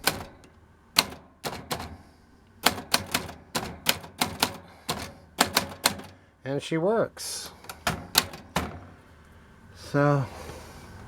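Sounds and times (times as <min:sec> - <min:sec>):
typewriter key strikes: 0:00.0 - 0:06.2, 0:07.6 - 0:09.0.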